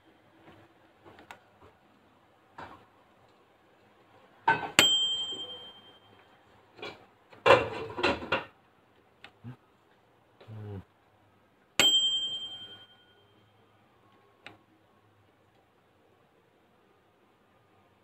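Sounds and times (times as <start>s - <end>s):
microwave bell ding: 4.7s - 6.4s, 11.8s - 13.5s.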